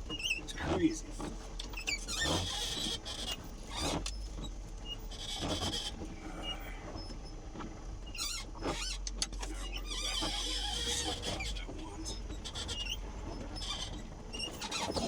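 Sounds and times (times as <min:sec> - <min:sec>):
vehicle engine low hum: 0:00.0 - 0:15.0
tyres squeaking on snow: 0:01.8 - 0:06.8, 0:08.1 - 0:15.0.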